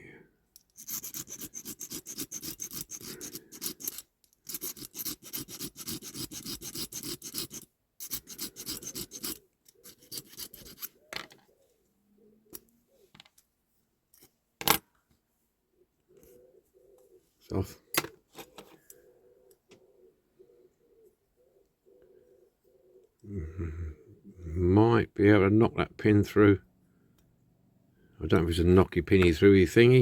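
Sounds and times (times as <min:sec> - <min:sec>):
hand file rasping on metal: 0:00.8 - 0:11.0.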